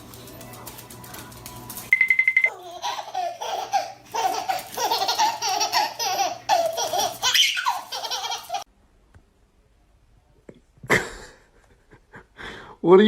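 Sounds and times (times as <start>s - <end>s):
rapid high beeps: 1.9s - 2.5s
young child laughing: 2.5s - 8.7s.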